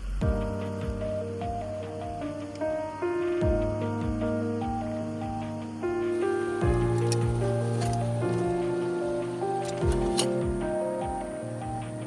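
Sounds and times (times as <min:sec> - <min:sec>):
steady kick drum beat: 0:00.0 - 0:02.5, 0:03.4 - 0:05.9, 0:06.6 - 0:12.0
electronic music: 0:00.0 - 0:12.0.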